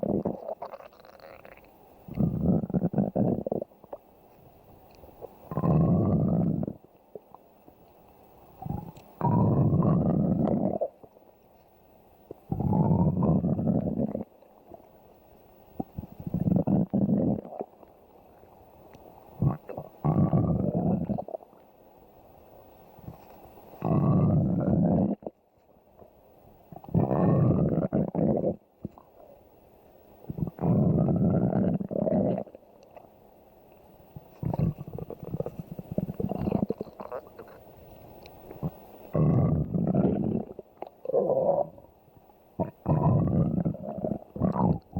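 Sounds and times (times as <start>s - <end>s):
bubbling gurgles: 0.0s - 4.0s, 34.2s - 37.8s, 38.5s - 41.9s, 42.6s - 44.9s
stomach growling: 0.0s - 7.4s, 8.6s - 11.2s, 12.3s - 15.0s, 15.7s - 18.6s, 19.3s - 21.7s, 23.0s - 25.4s, 26.7s - 29.4s, 30.3s - 33.2s, 34.1s - 44.9s.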